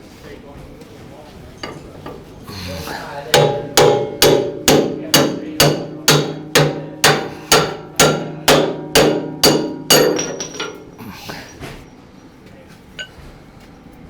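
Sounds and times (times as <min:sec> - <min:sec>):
hammer striking metal: 0:03.3 - 0:11.0.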